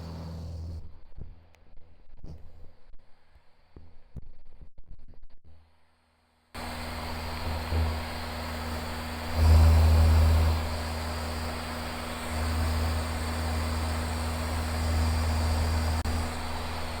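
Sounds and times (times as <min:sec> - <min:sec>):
aircraft engine and propeller droning: 0:06.6 - 0:17.0.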